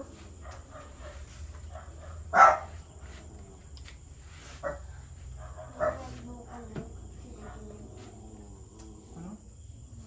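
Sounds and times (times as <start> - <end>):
faint background noise: 0.0 - 10.0
dog bark: 0.4 - 2.8, 4.6 - 6.7, 7.4 - 7.8.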